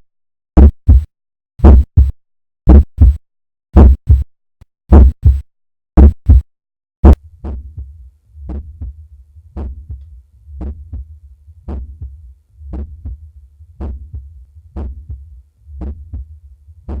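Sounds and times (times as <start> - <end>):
heartbeat: 0.6 - 3.2, 3.8 - 4.3, 4.9 - 5.4, 6.0 - 6.4, 7.0 - 17.0
steady low hum: 7.1 - 17.0.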